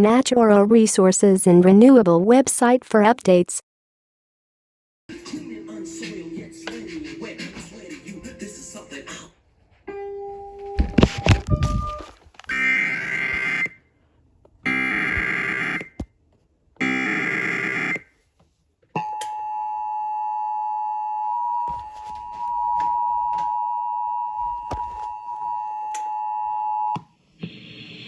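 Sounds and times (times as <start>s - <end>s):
two-tone attention signal: 10.0s - 12.7s.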